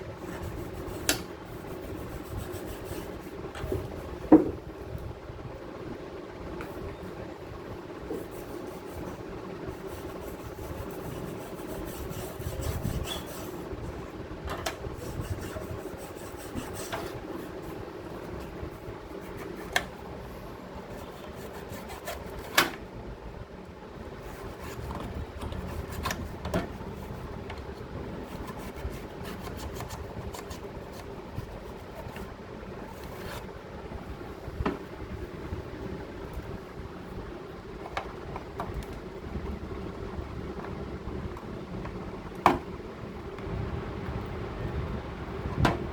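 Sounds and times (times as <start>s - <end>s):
steady hum: 0.0s - 45.9s
scraping on computer parts: 9.8s - 20.1s, 24.2s - 33.6s.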